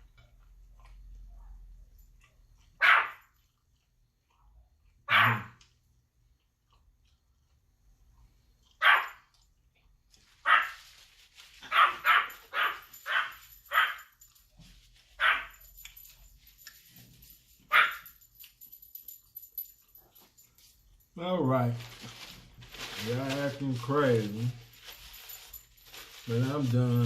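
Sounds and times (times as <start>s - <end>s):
dog barking: 2.8s - 3.3s, 5.0s - 5.6s, 8.7s - 9.3s, 10.4s - 10.8s, 11.6s - 14.1s, 15.2s - 15.6s, 17.7s - 18.1s.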